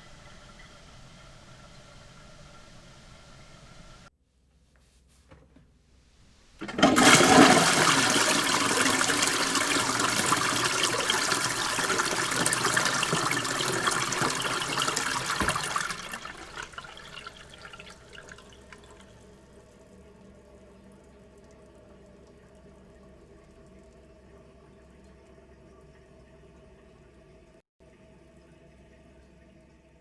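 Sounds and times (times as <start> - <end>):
toilet flush click: 6.6 - 19.2
toilet flushing water rush: 6.6 - 19.2.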